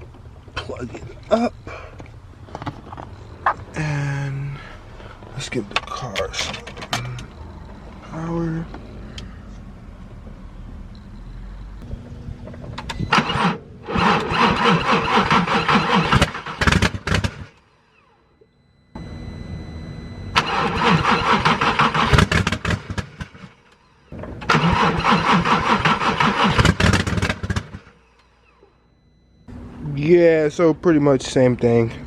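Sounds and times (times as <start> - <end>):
car engine starter cranking: 0.0 - 9.3, 12.7 - 18.2, 20.3 - 28.8.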